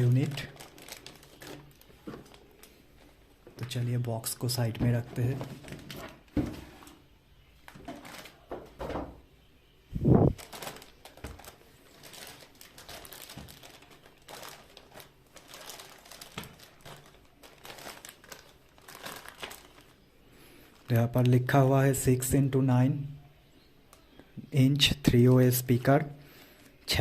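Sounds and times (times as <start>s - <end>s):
packaging crinkling and rustling: 0.0s - 7.0s, 7.6s - 8.8s, 10.3s - 20.9s.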